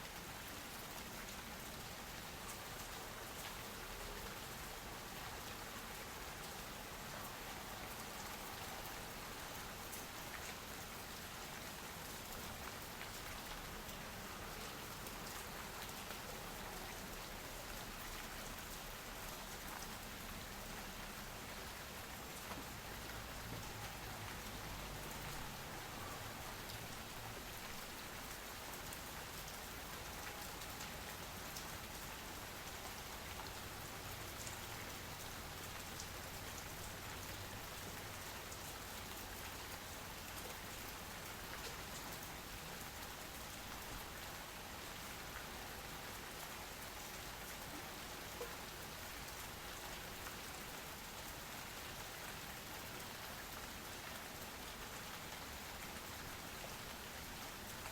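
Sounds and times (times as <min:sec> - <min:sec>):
rain on hard surfaces: 0:00.0 - 0:57.9.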